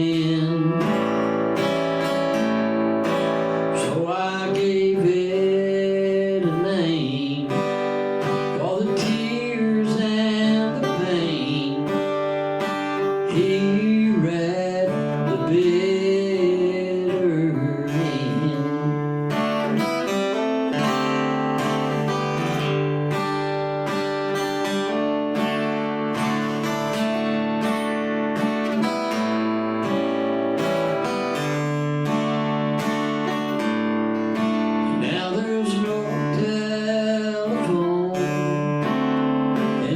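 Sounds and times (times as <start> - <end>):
man singing: 0.0 - 2.4, 3.3 - 23.4, 34.4 - 39.9
acoustic guitar strumming: 0.0 - 39.9.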